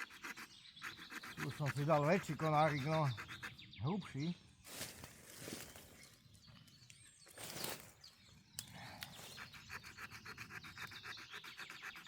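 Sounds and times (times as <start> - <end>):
saw rasping through branch: 0.0 - 3.6.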